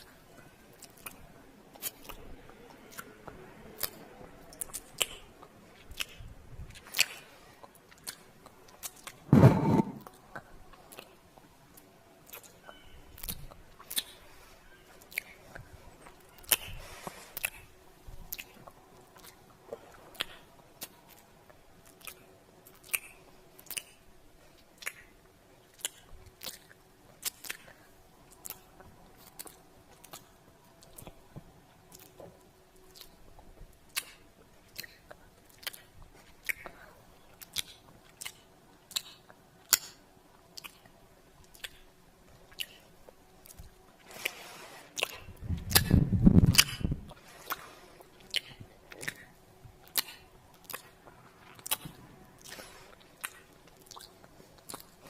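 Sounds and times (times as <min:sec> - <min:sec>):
wet lip smacks and kisses: 0:21.8 - 0:24.0, 0:25.7 - 0:27.8, 0:37.4 - 0:40.0, 0:40.6 - 0:41.8, 0:45.0 - 0:47.6, 0:48.2 - 0:51.0, 0:51.6 - 0:52.6, 0:53.2 - 0:54.9.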